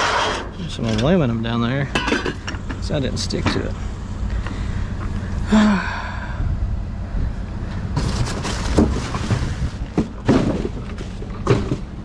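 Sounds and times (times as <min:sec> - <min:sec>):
steady low rumble: 0:00.5 - 0:12.0
junk knocking and clattering: 0:01.9 - 0:03.8, 0:07.9 - 0:12.0.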